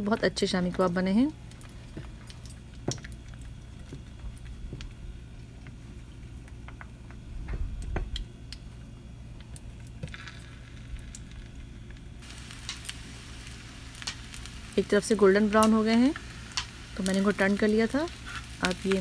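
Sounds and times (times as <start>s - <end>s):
food sizzling in oil: 12.2s - 19.0s.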